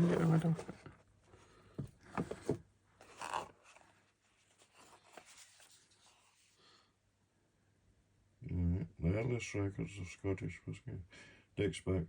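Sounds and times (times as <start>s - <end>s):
cardboard lid scraping against box: 0.0s - 0.8s.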